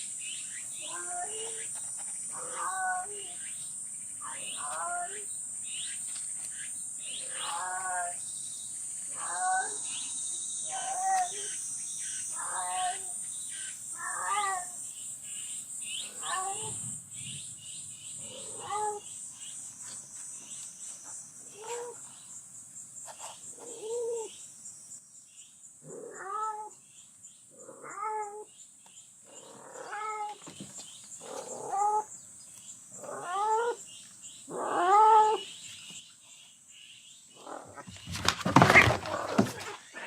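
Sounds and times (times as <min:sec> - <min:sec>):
cat meowing: 0:14.0 - 0:14.7, 0:18.3 - 0:19.0, 0:25.9 - 0:26.7, 0:29.6 - 0:30.4.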